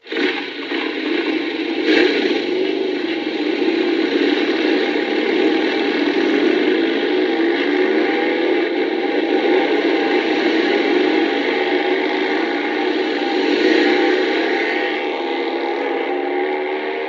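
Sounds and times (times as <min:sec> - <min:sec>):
wavering hum: 0:00.1 - 0:17.0.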